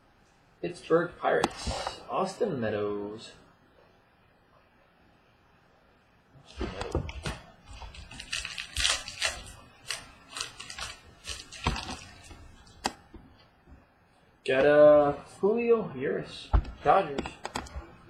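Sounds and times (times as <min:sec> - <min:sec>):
cards and packaging rustling: 0:06.7 - 0:13.0.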